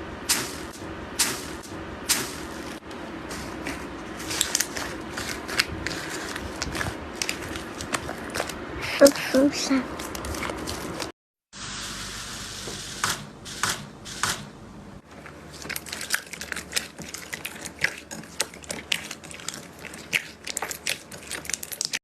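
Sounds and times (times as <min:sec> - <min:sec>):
steady hiss: 0:11.6 - 0:14.3
slime crackling and popping: 0:15.6 - 0:22.0.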